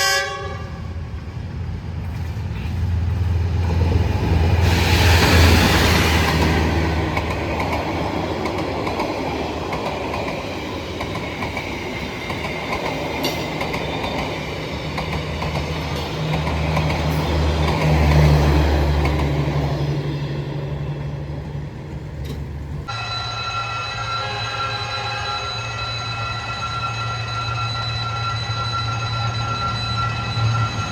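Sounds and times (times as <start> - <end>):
diesel train engine drone: 0.0 - 30.9
train wheels rolling on rails: 1.2 - 23.2
high ringing tone: 22.9 - 30.9.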